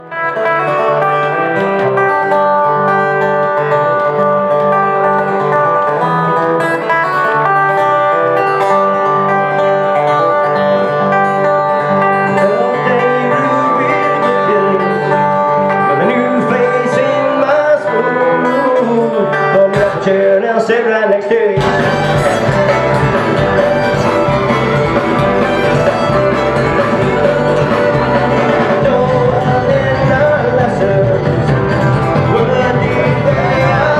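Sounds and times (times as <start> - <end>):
band playing instrumental: 0.0 - 20.3, 21.6 - 33.9
repeating bass line: 21.6 - 33.9.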